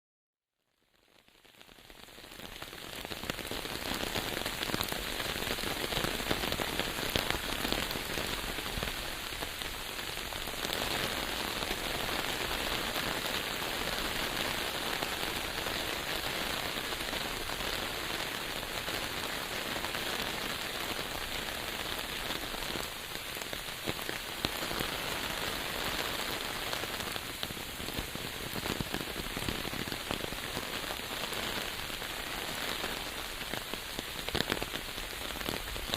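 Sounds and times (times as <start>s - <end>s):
steady rain patter: 0.7s - 35.9s.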